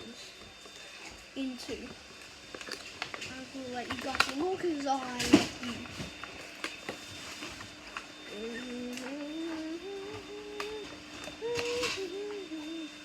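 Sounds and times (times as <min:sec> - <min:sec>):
man humming: 0:08.3 - 0:13.0.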